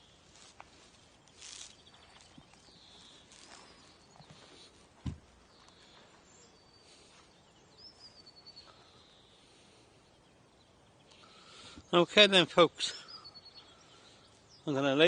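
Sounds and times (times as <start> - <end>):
faint birdsong: 0.0 - 15.0
brief low thump: 5.0 - 5.2.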